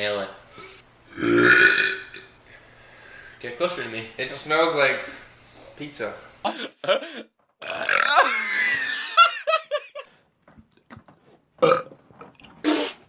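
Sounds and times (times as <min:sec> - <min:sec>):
loud human belch: 0:01.1 - 0:02.3, 0:07.6 - 0:08.6, 0:11.6 - 0:12.0.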